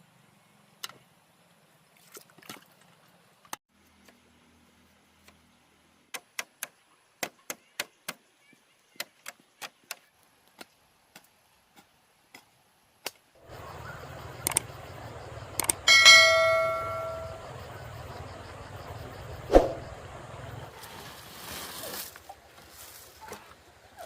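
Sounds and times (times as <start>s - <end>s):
steady noisy hum: 13.4s - 20.8s.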